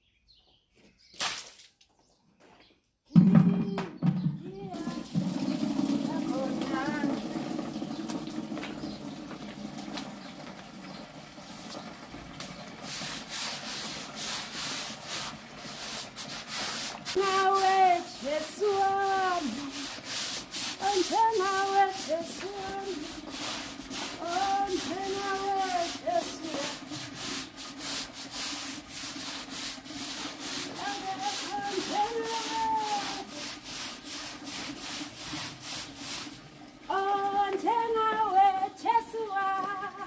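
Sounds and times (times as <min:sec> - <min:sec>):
broom sweeping ground: 0:12.9 - 0:36.4.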